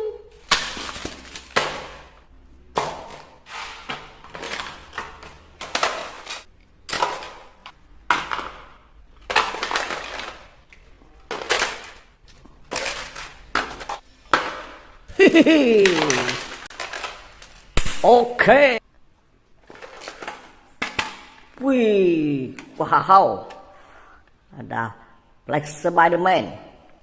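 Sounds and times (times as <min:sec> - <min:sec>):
plastic packaging crackling: 0:00.3 - 0:02.2, 0:02.8 - 0:08.6, 0:09.2 - 0:14.6, 0:15.2 - 0:18.6.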